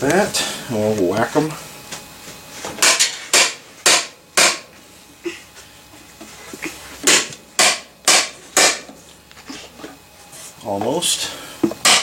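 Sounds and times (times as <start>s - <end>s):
sharp whacks on plastic pipes: 2.8s - 4.6s, 7.0s - 8.9s.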